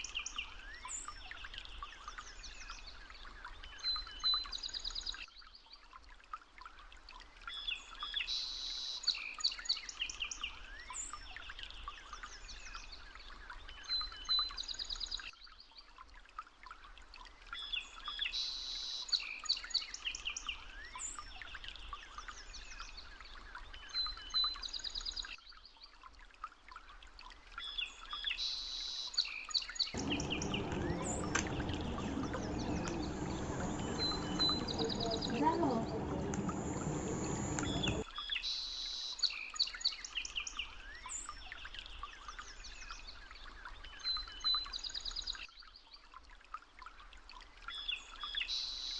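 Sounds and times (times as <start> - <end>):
birds chirping and trilling: 30.0 - 38.0
light outdoor noise: 30.0 - 38.0.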